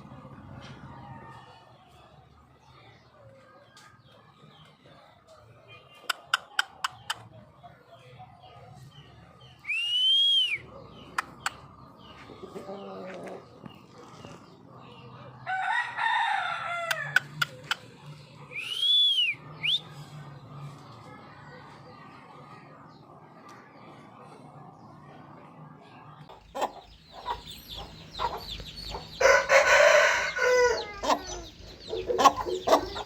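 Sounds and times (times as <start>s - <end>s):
chickens calling: 10.6s - 17.9s, 26.3s - 33.0s.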